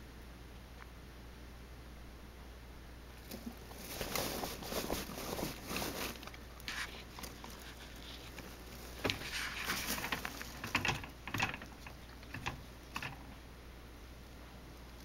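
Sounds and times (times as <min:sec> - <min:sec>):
rabbit rustling and clicking: 0:03.2 - 0:13.5.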